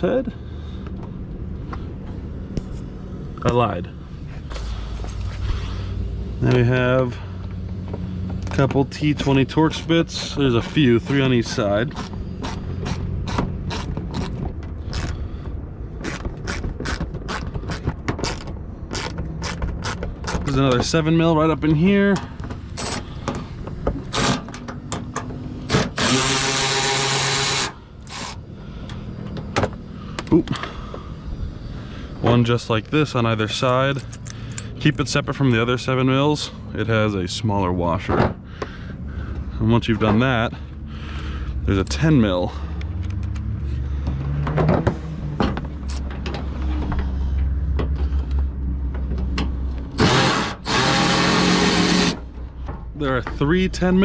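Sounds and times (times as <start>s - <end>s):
power drill spinning: 9.7s - 15.1s, 25.7s - 28.4s, 50.0s - 52.2s
tool and fastener clicks: 16.0s - 20.5s
cordless power tool running: 25.7s - 28.4s, 50.0s - 52.2s.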